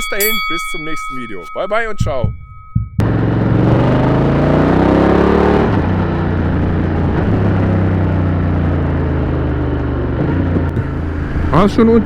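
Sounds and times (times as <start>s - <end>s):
motorcycle engine revving: 3.0s - 12.0s.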